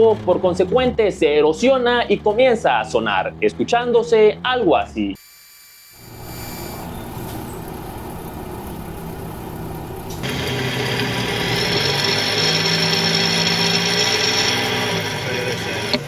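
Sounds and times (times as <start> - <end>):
high whine: 5.2 - 16.0
wheel bearing whirring drone: 5.2 - 16.0
low hum: 5.9 - 16.0
road noise: 6.0 - 16.0.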